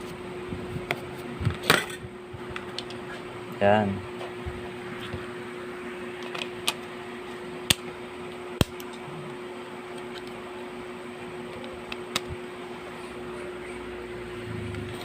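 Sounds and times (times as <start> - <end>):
steady hum: 0.0 - 15.0.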